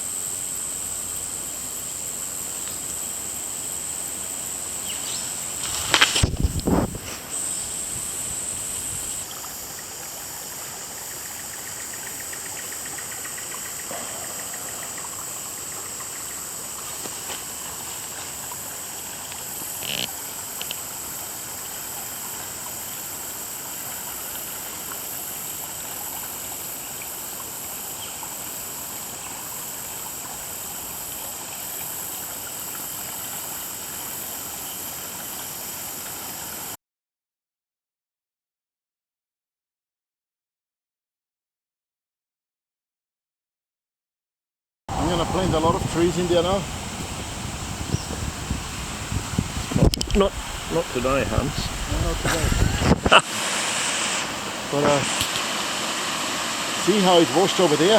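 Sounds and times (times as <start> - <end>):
rushing floodwater: 44.9 - 57.9.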